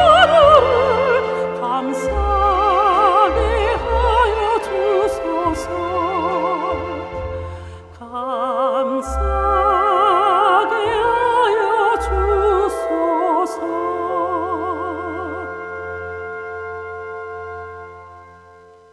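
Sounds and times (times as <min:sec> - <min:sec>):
woman singing operatic vibrato: 0:00.0 - 0:16.5.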